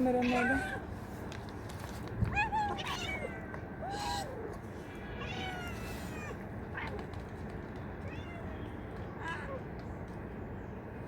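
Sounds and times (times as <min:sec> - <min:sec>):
cats meowing: 0:02.3 - 0:04.5, 0:05.1 - 0:07.0.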